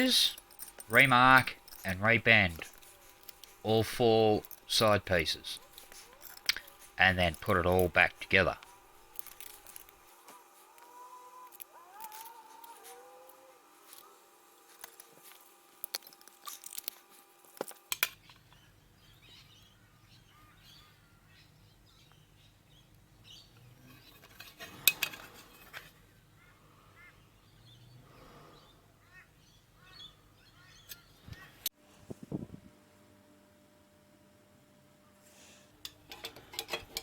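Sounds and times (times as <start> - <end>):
birds chirping: 26.3 - 31.7
sheet metal parts clicking and knocking: 35.9 - 37.0.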